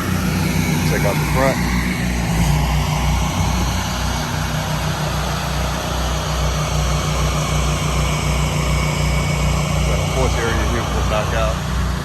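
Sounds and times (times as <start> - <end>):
pressure washer engine throbbing: 0.0 - 12.0.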